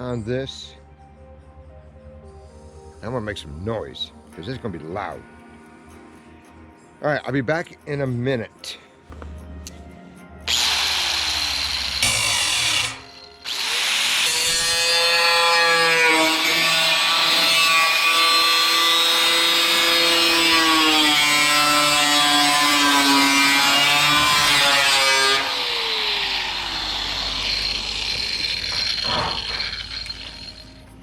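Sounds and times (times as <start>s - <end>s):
angle grinder cutting metal: 10.5s - 31.0s.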